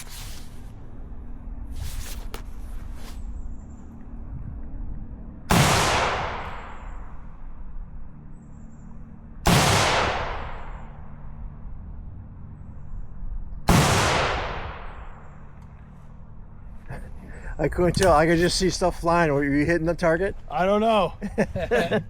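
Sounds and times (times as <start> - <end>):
rifle shots with long echo: 5.5 - 7.5, 9.4 - 11.2, 13.6 - 15.6.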